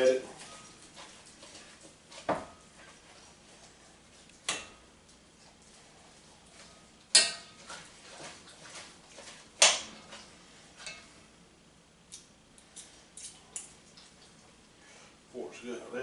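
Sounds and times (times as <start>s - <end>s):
forks clinking on a pan: 7.1s - 7.6s.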